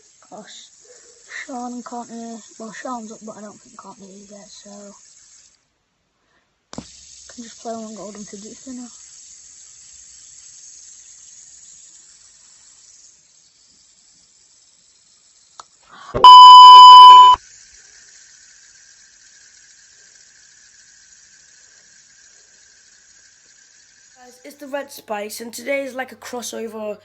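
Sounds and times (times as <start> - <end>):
electronic beep tone: 16.2 - 17.4.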